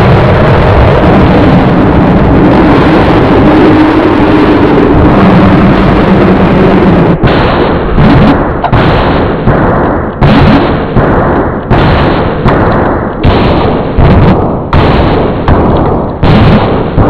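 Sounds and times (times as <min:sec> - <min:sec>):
distorted chopped samples: 0:07.2 - 0:17.0.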